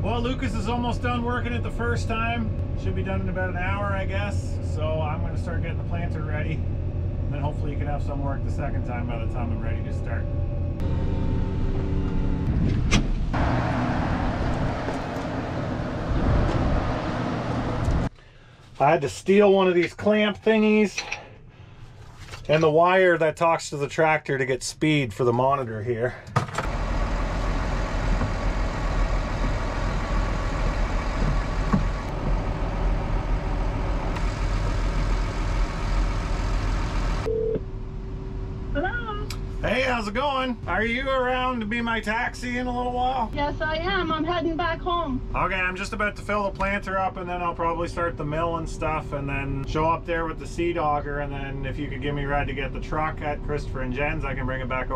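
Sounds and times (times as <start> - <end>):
vehicle engine rumble: 0.0 - 18.1, 26.0 - 54.9
tractor engine running: 7.6 - 18.1, 26.5 - 37.3
wind or road noise rushing: 10.8 - 18.1.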